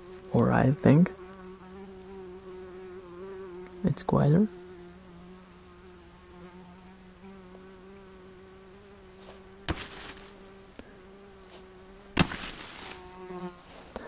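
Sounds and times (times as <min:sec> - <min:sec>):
insect buzzing: 0:00.0 - 0:14.0
sharp knocks: 0:12.2 - 0:12.8.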